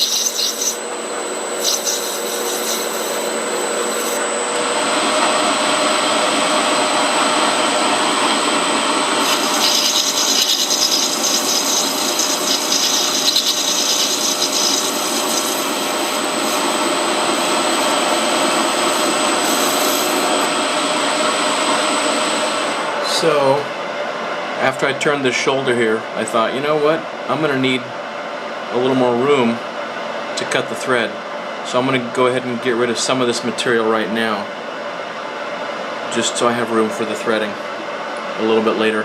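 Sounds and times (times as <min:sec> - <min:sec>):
metal cutting scraping: 0:00.0 - 0:00.8, 0:01.5 - 0:04.3, 0:09.2 - 0:20.5
lathe motor whine: 0:00.0 - 0:24.3.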